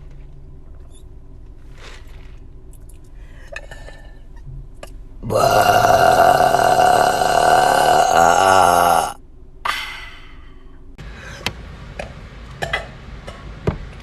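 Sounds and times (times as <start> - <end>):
woman burping loudly: 5.2 - 9.2.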